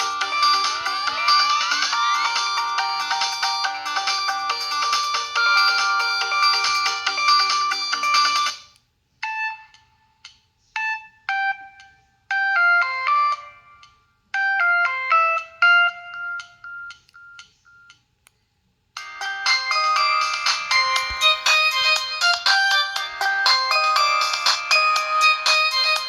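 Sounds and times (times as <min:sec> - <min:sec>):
busy phone ringtone tune: 0:00.0 - 0:08.6, 0:19.0 - 0:26.0
ringtone melody of bright notes: 0:00.0 - 0:10.2, 0:10.8 - 0:17.9, 0:19.0 - 0:26.0.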